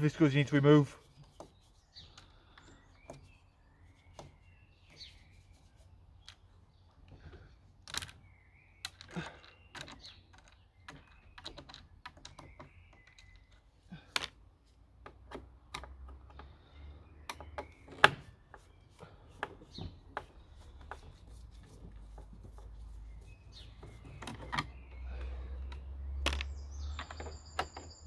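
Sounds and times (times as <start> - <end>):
plastic parts handled: 17.3 - 27.9.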